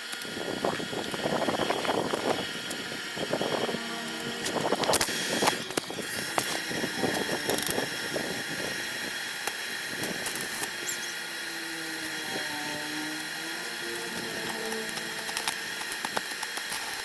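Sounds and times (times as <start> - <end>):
motor whining: 0.0 - 17.0
grater clicks and scrapes: 12.7 - 17.0.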